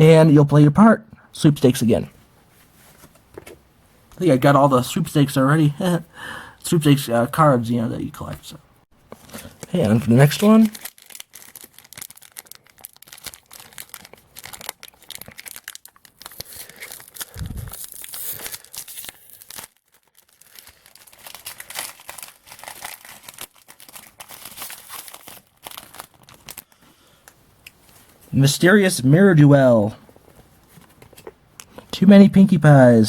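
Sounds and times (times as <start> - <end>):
foil wrapper tearing and crinkling: 9.2 - 26.8.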